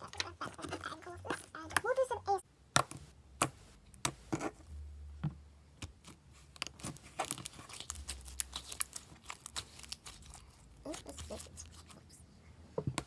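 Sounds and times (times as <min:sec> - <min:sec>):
slime squished by hand: 0:05.9 - 0:12.0.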